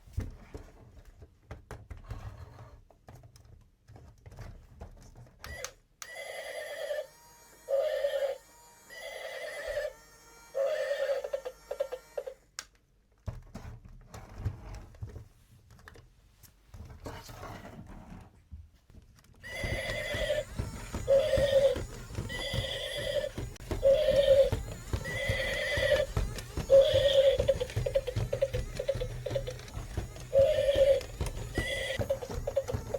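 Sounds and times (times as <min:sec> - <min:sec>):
toy hoofbeats: 0:05.5 - 0:12.4, 0:19.4 - 0:32.9
toy horse neighs: 0:06.0 - 0:12.4, 0:19.4 - 0:32.9
plastic toys clicking: 0:19.4 - 0:32.9.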